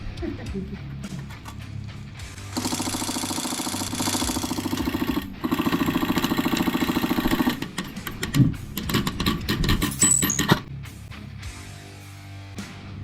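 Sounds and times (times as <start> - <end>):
airsoft gun firing full auto: 2.6 - 9.3.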